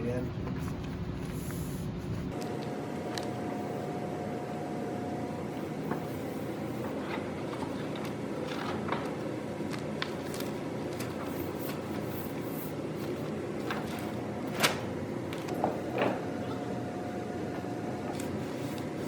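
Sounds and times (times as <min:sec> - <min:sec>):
steady background hum: 0:00.0 - 0:19.0.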